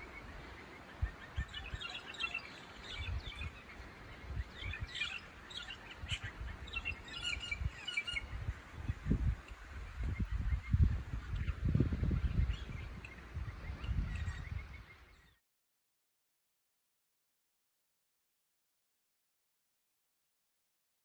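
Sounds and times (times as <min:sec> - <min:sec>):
songbirds chirping and singing: 0:00.0 - 0:15.4.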